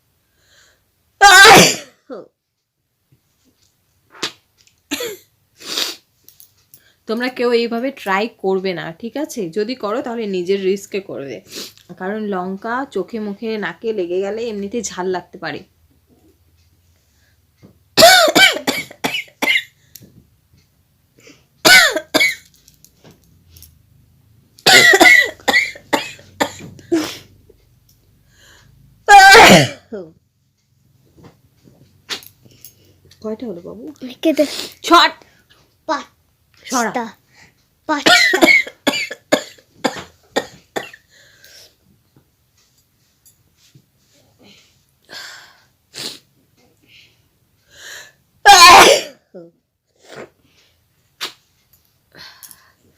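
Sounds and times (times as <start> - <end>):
woman sneezing: 1.2 - 2.0, 29.1 - 29.9, 48.5 - 49.3
woman coughing: 1.2 - 2.2, 4.9 - 5.3, 18.0 - 19.8, 21.6 - 22.4, 24.6 - 27.2, 29.1 - 30.0, 38.0 - 41.1, 48.5 - 49.5.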